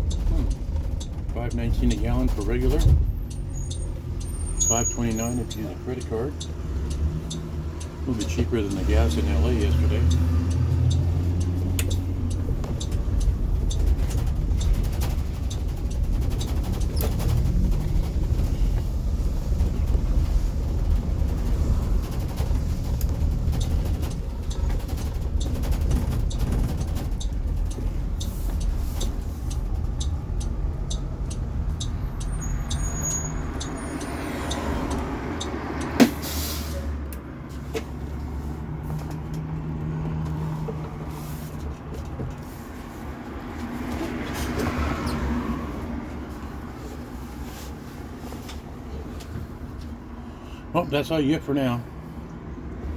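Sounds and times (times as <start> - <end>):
bus body rattles and clicks: 0.0 - 52.9
road and tyre rumble: 0.0 - 52.9
air brake hiss: 36.2 - 36.9.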